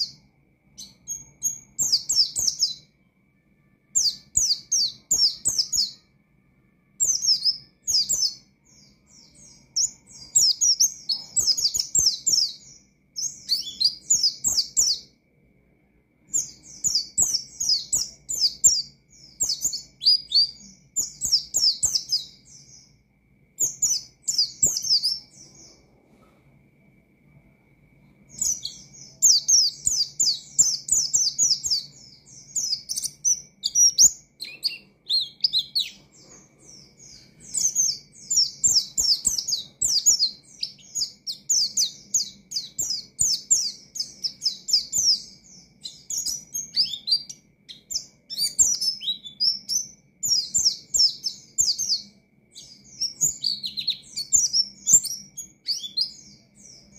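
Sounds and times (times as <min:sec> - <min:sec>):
bird singing high chirps: 0:00.0 - 0:26.2, 0:27.4 - 0:56.9
faint high whine: 0:00.0 - 0:56.9
low hum: 0:25.2 - 0:29.2.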